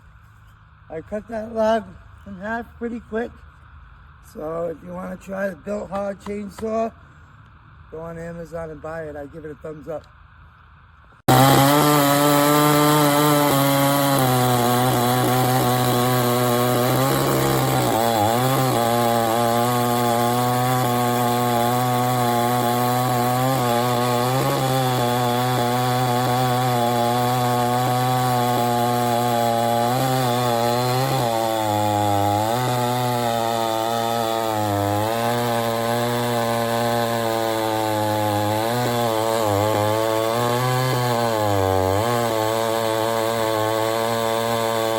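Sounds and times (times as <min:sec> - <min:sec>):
chainsaw running at high speed: 0:11.3 - 0:44.9.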